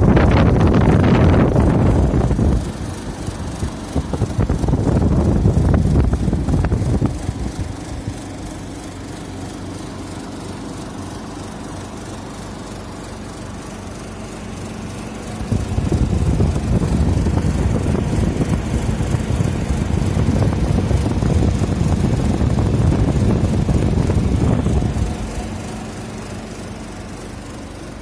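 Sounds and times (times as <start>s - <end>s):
rough rattling rumble: 0.0s - 11.8s, 12.7s - 28.0s
air conditioner humming: 0.0s - 28.0s.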